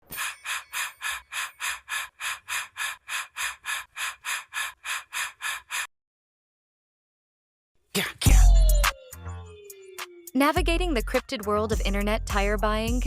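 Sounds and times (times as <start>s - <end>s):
rapid panting breaths: 0.1s - 5.9s.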